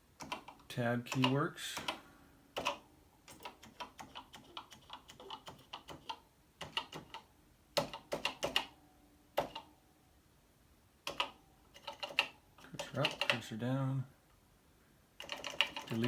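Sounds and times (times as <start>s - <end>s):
computer keyboard keys clicking: 0.2s - 2.0s, 2.6s - 8.7s, 11.1s - 13.4s, 15.2s - 16.0s.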